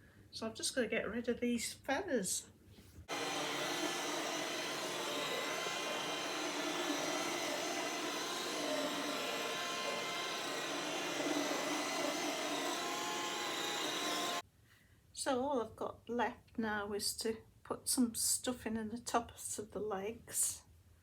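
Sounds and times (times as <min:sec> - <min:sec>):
vacuum cleaner running: 0:03.1 - 0:14.4.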